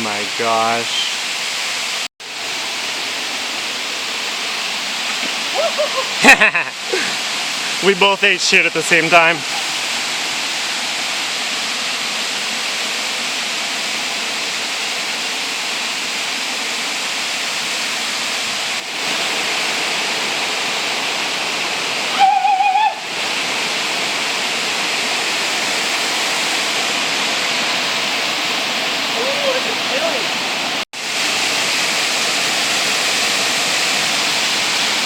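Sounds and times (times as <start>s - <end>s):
waterfall rushing: 0.0s - 35.0s
high wavering call: 22.1s - 23.1s.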